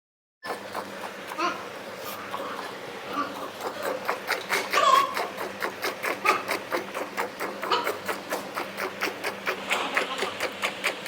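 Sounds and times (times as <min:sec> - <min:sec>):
steady low hum: 0:00.4 - 0:11.0
rapid mechanical clicking: 0:03.5 - 0:11.0.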